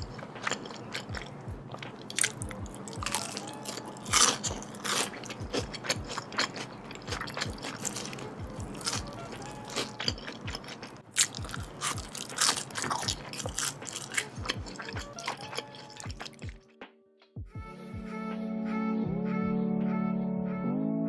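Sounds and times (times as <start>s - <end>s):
crunchy bites and chewing: 0.0s - 16.6s.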